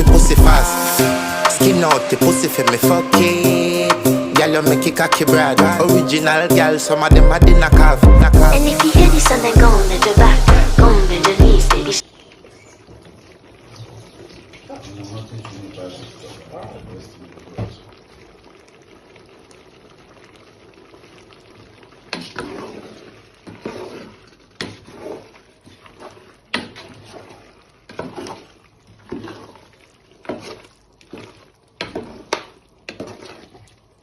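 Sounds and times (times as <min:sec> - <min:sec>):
soup splashing in pot: 0:17.3 - 0:34.0.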